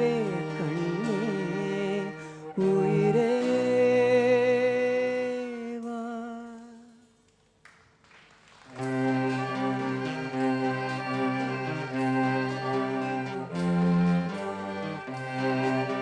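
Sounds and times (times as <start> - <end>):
sustained strings: 0.0 - 4.5, 8.7 - 16.0
voice singing with vibrato: 0.0 - 6.8.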